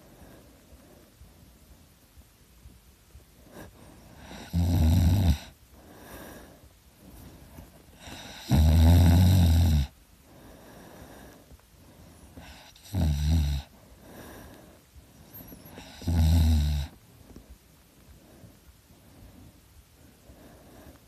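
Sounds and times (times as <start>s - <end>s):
quiet breathing: 0.0s - 21.0s
person snoring: 4.2s - 5.6s, 8.0s - 10.0s, 12.4s - 13.7s, 15.7s - 17.0s.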